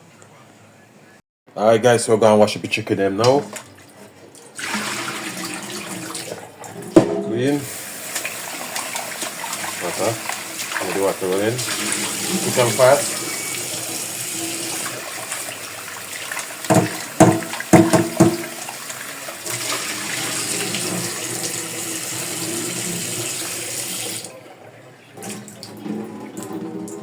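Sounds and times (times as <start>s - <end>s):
tap water running into pot: 4.4s - 24.3s, 25.2s - 27.0s
loud clunks: 6.8s - 7.7s.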